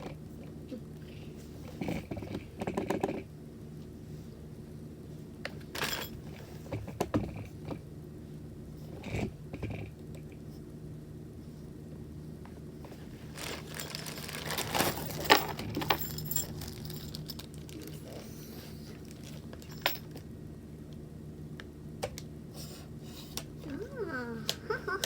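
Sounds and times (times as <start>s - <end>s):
steady low hum: 0.0s - 25.0s
rustling: 12.9s - 20.1s.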